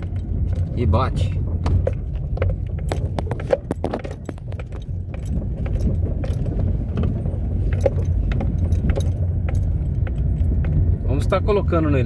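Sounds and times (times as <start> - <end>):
road rumble: 0.0 - 12.0
suspension creaking and knocking: 0.0 - 12.0.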